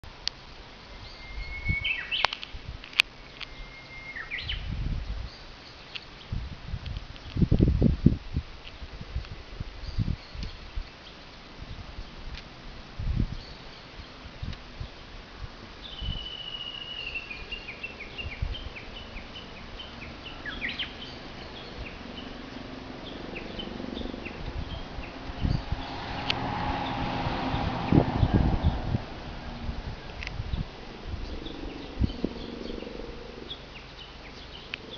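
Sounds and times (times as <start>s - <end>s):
small birds chirping: 0.5s - 6.4s, 9.8s - 12.3s, 15.8s - 34.9s
bird whistling song: 0.9s - 2.4s, 3.4s - 4.7s, 15.8s - 22.4s
low rumbles: 17.1s - 34.9s
distant helicopter drone: 17.8s - 34.9s.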